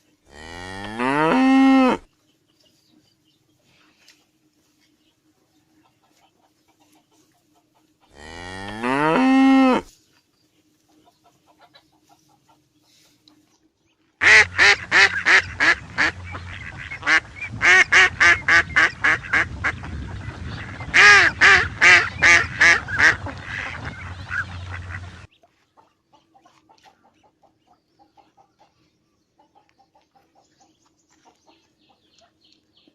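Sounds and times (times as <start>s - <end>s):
low steady hum: 13.4s - 25.3s
duck quacking loudly: 14.2s - 25.3s.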